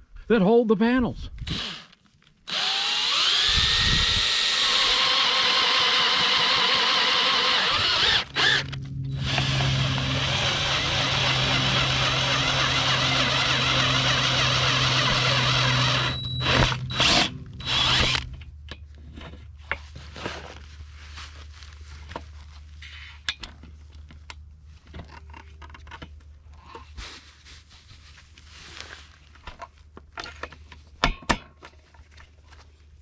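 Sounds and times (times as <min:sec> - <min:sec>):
power drill boring into metal frame: 0:01.4 - 0:18.3.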